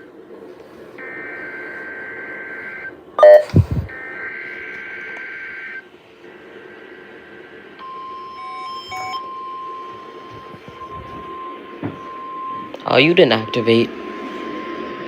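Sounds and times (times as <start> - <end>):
radio hiss: 0.4 - 4.7, 6.1 - 7.8.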